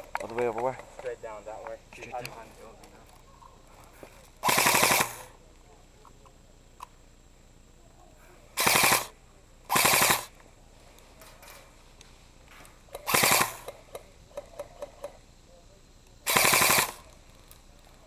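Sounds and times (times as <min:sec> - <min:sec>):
airsoft rifle full-auto bursts: 0:04.4 - 0:05.3, 0:08.6 - 0:09.1, 0:09.7 - 0:10.4, 0:13.0 - 0:13.7, 0:16.2 - 0:17.1.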